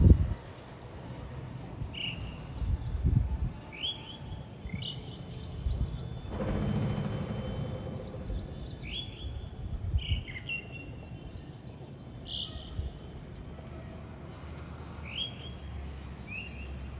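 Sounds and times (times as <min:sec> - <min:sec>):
low rumbling: 0:05.7 - 0:10.4.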